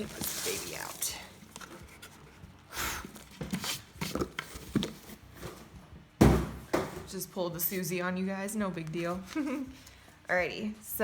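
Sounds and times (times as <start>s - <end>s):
packaging rustling: 0.0s - 5.2s.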